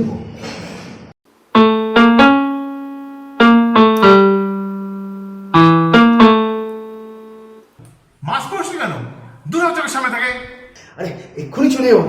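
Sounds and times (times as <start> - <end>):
piano notes: 1.5 - 7.7.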